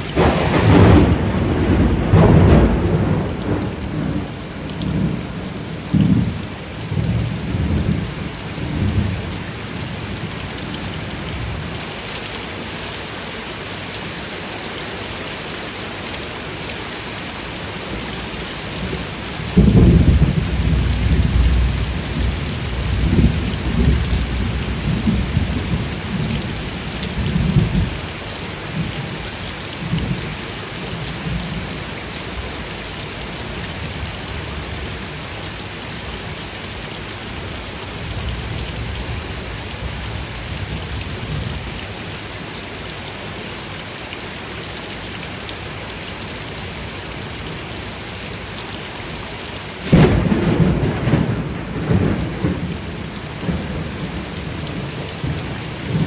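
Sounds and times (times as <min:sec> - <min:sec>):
heavy rain: 0:00.0 - 0:56.0
thunder rumbling: 0:00.1 - 0:09.3, 0:18.8 - 0:28.0, 0:49.8 - 0:56.0.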